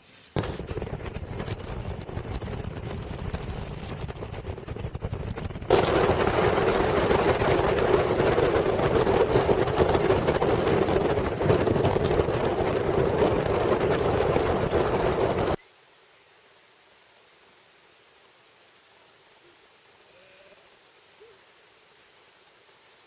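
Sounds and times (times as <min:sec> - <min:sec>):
vehicle engine and road rumble: 0:00.4 - 0:15.6.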